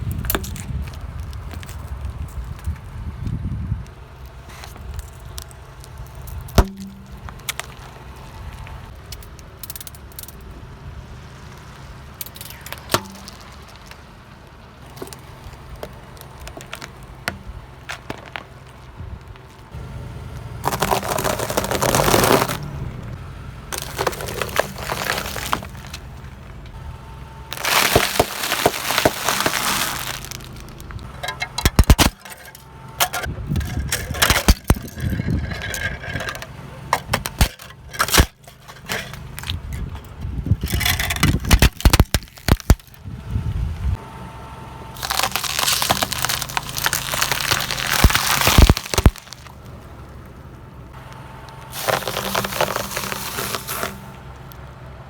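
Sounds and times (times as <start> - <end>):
low engine hum: 0.0 - 55.0
tyre crushing objects: 4.5 - 8.8, 14.9 - 43.0, 45.0 - 49.6, 51.6 - 54.2.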